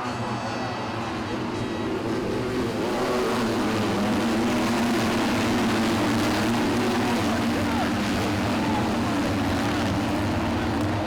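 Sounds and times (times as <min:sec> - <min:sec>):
engine droning: 0:00.0 - 0:11.0.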